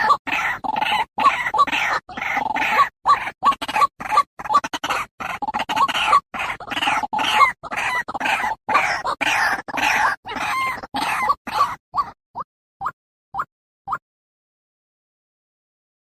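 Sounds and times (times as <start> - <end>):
bird calling rough notes: 0.0 - 12.2.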